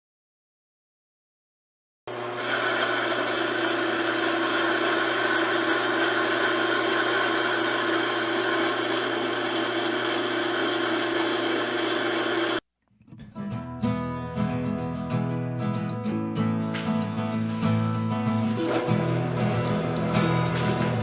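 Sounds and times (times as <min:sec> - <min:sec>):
milling machine motor whining: 0:02.1 - 0:12.6, 0:17.6 - 0:21.0.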